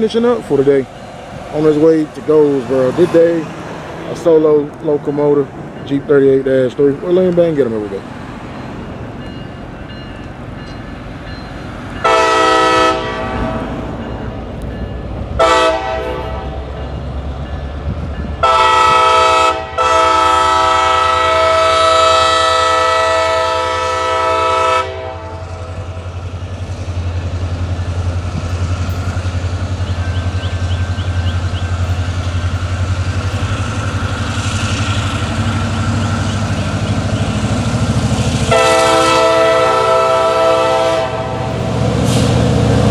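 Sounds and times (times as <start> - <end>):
diesel engine rumbling: 0.0 - 42.9
locomotive air horn blasts: 12.0 - 13.7, 15.4 - 16.8, 18.4 - 25.7, 38.5 - 42.3.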